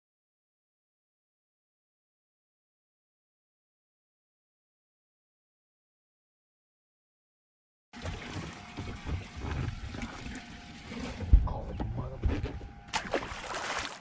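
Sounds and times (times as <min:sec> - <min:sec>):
water noise: 0:08.0 - 0:14.0.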